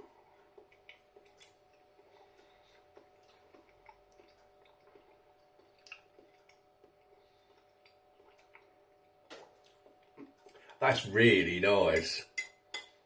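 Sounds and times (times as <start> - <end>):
person chewing: 0.4 - 10.6.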